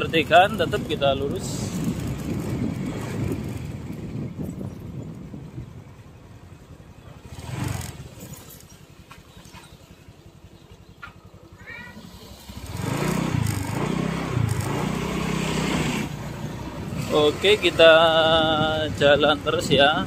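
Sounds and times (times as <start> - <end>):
vehicle engine and road noise: 0.0 - 20.0.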